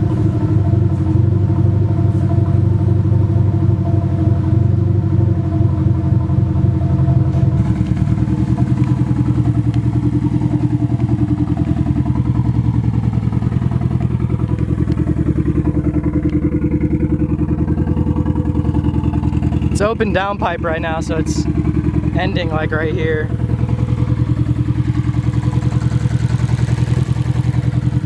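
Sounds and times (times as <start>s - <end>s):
loud pulsing car exhaust idling: 0.0s - 28.0s.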